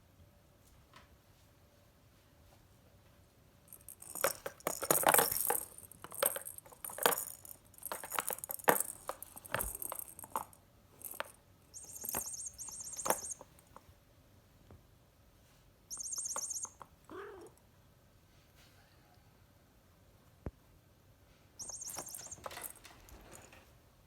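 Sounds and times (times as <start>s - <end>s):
cat toy jingling: 3.7s - 13.6s, 15.9s - 16.8s, 21.6s - 23.6s.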